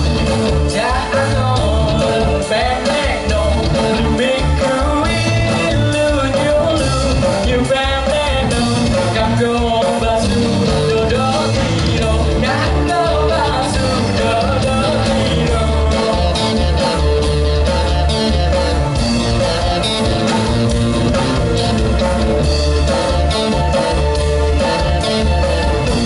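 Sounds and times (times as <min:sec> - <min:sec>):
lead singer singing: 0:00.0 - 0:18.8
rock band playing: 0:00.0 - 0:26.0.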